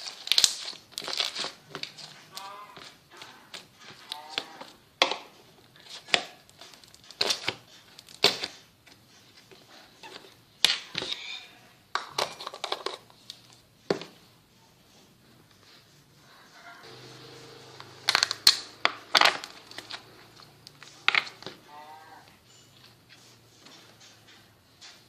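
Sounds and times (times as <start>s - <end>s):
slime popping and crackling: 0.0s - 5.2s, 5.9s - 8.6s, 18.0s - 21.6s.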